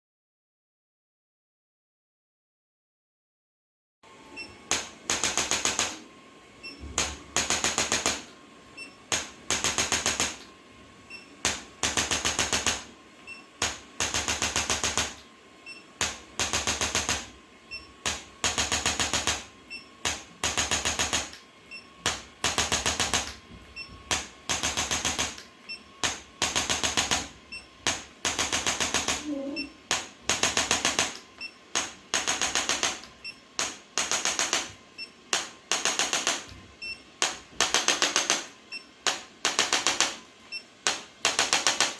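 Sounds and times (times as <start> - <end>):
percussive massage device clicking: 4.7 - 6.0, 7.0 - 8.4, 9.1 - 10.5, 11.4 - 12.9, 13.6 - 15.3, 16.0 - 17.3, 18.0 - 21.4, 22.0 - 23.4, 24.1 - 29.3, 29.9 - 34.7, 35.3 - 36.6, 37.2 - 41.9.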